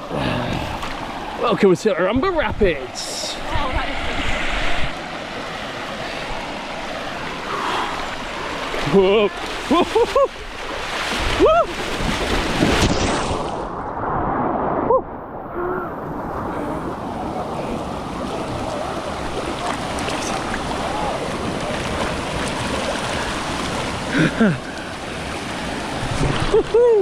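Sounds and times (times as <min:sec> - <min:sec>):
water rushing down rock slide: 0:07.7 - 0:17.4.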